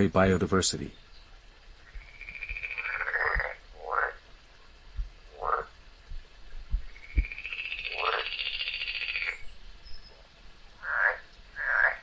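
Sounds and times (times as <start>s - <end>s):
frog chirping and trilling: 1.9s - 4.2s, 5.3s - 5.7s, 6.9s - 10.1s, 10.8s - 12.0s
low thumps: 6.0s - 7.4s.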